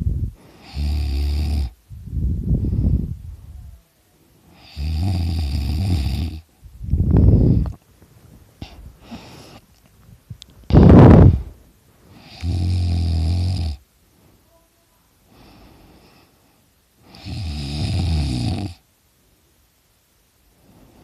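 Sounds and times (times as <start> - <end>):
person snoring loudly: 0.6 - 1.8, 4.6 - 6.5, 12.2 - 13.8, 17.1 - 18.8.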